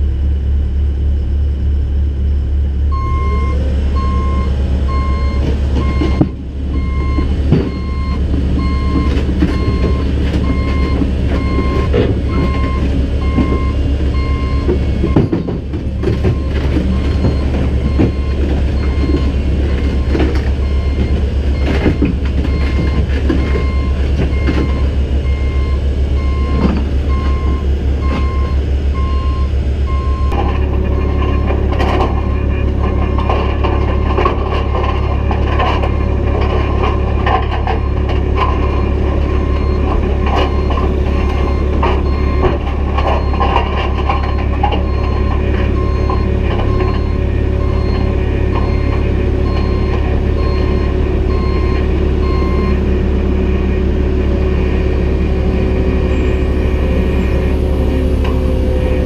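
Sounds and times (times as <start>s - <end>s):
excavator diesel engine: 0.0s - 59.0s
travel alarm beeping: 2.9s - 15.2s.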